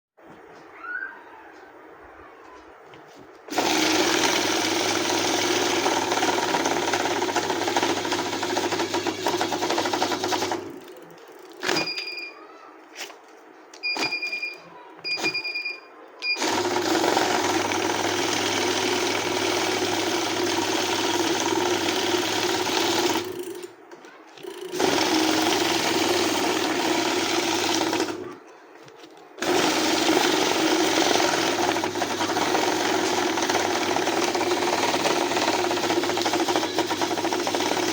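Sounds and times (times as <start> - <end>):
banknote counting machine whirring: 3.5 - 12.1, 16.4 - 23.7, 24.4 - 28.3, 29.4 - 37.9.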